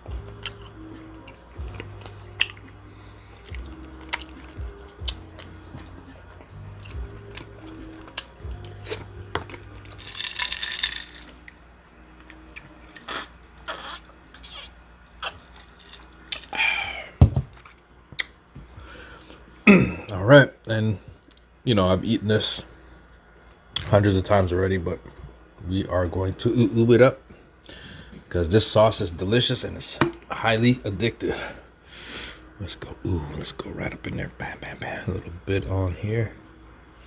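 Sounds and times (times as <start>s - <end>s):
background music with bass line: 0.0s - 13.5s
chewing and crunching food: 0.1s - 11.6s, 12.2s - 16.6s, 17.5s - 18.4s.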